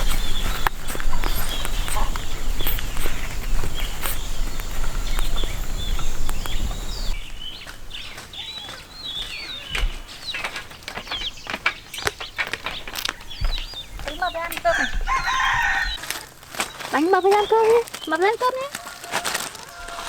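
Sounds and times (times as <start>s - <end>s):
wing flaps: 0.0s - 7.2s
rough rumbling noise: 0.0s - 8.0s
birds chirping: 0.0s - 20.0s.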